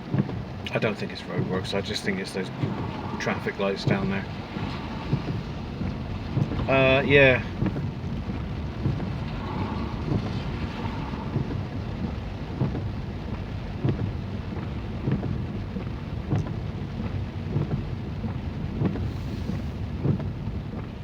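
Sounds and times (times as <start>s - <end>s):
heavy rain: 0.0s - 21.0s
low steady rumble: 0.0s - 21.0s
soft knocks: 1.4s - 6.7s.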